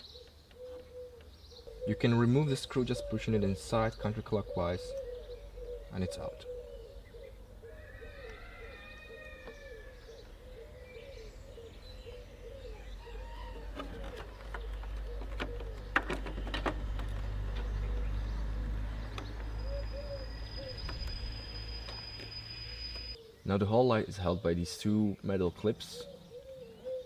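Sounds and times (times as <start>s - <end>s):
birds cooing: 0.0s - 27.0s
sharp clicks and knocks: 13.7s - 17.8s.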